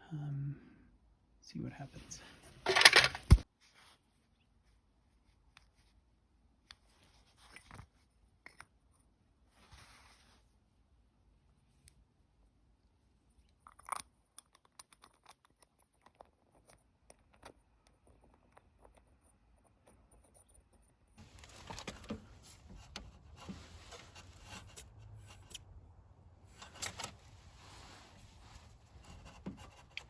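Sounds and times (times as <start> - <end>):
small metal parts clinking: 2.6 - 3.4.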